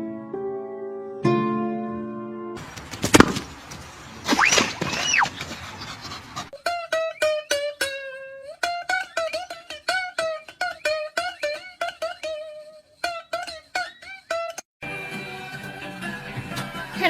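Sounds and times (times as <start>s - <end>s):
plucked string instrument melody: 6.6s - 15.7s.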